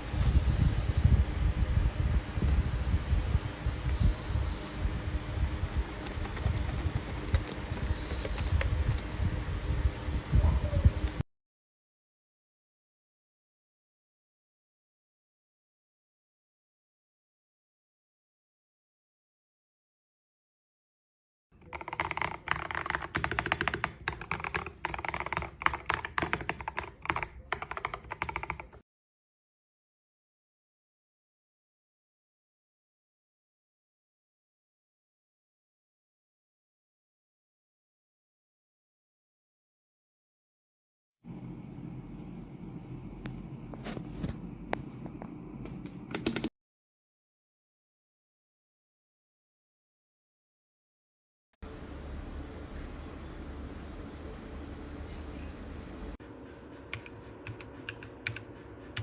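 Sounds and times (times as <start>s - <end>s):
mechanical keyboard typing: 5.9s - 9.1s, 21.6s - 28.8s, 45.7s - 46.5s, 56.9s - 58.4s.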